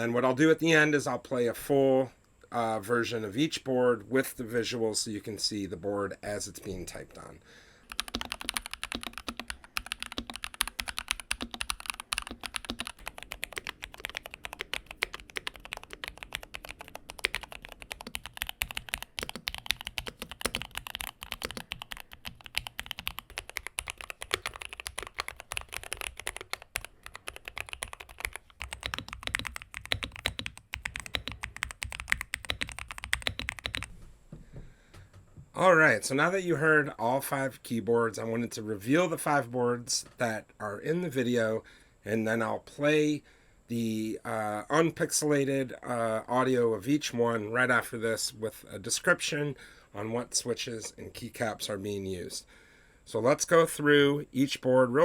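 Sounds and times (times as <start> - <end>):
mechanical keyboard typing: 7.9 - 33.9.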